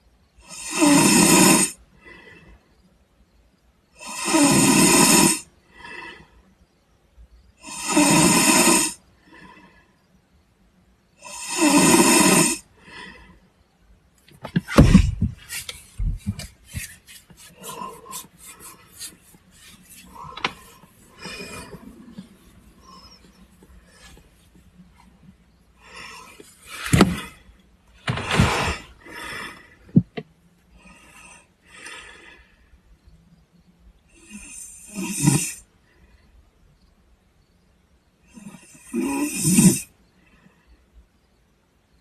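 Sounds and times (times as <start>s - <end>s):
person snoring loudly: 0.4s - 1.8s, 4.0s - 6.0s, 7.6s - 9.0s, 11.2s - 12.7s, 20.0s - 22.2s, 34.2s - 35.7s, 38.3s - 39.9s
low thumps: 14.5s - 16.9s
rustling in bed: 14.5s - 25.4s, 28.0s - 29.3s.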